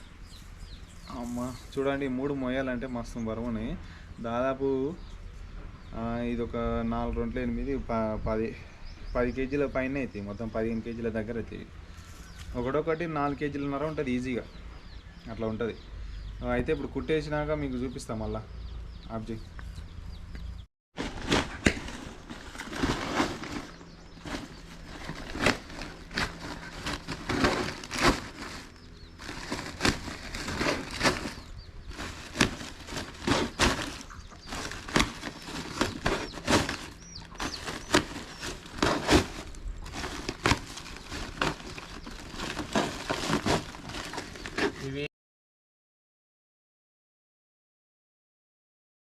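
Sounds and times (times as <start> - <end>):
sharp crackles and knocks: 20.3 - 44.8
nets rustling and crinkling: 21.0 - 44.9.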